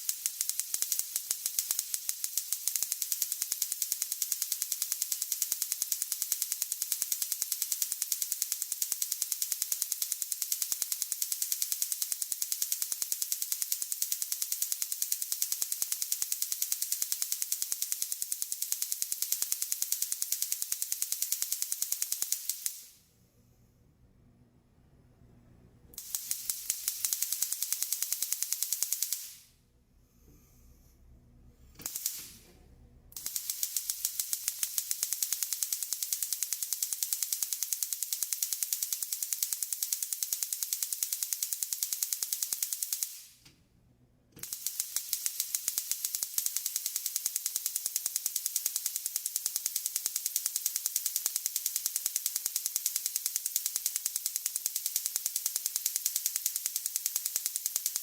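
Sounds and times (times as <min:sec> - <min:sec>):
gas stove igniter clicking: 0:31.8 - 0:32.5.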